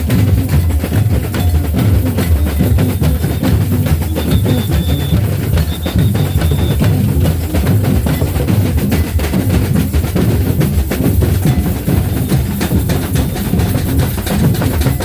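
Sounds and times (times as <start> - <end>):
samba drum ensemble: 0.0 - 15.0
high whistle blasts: 3.0 - 7.1.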